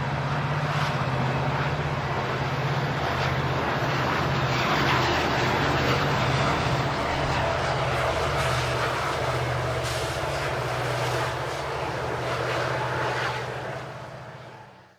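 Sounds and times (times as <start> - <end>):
low engine hum: 0.0 - 14.8
freight train wheels rumbling: 0.0 - 14.9.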